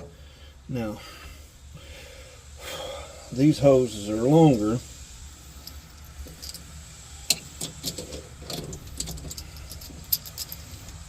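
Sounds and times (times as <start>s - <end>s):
low steady hum: 0.0s - 11.0s
hoses and metal fittings rattling: 3.3s - 11.0s.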